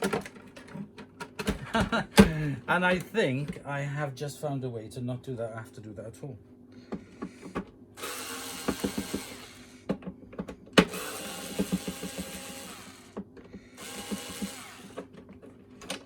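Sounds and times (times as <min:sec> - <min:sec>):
cordless drill running: 0:07.3 - 0:09.9, 0:10.8 - 0:15.1.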